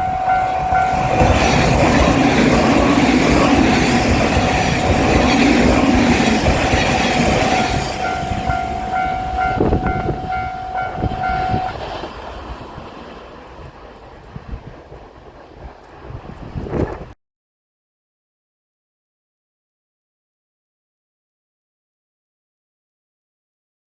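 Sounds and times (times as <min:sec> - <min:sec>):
crossing warning bell clanging: 0:00.0 - 0:13.0
train rumbling over crossing: 0:00.0 - 0:17.2.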